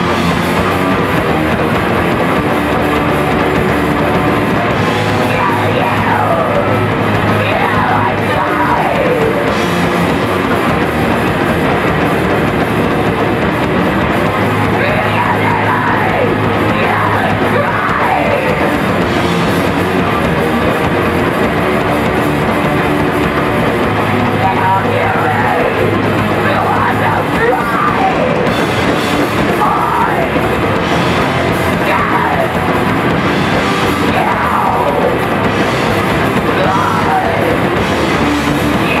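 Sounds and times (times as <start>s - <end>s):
punk band playing live: 0.0s - 39.0s
yelled vocals: 0.0s - 39.0s.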